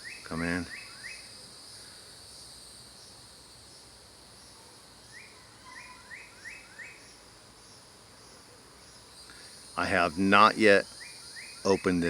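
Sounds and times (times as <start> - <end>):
insect chorus trilling: 0.0 - 12.0
bird chirping: 5.1 - 12.0.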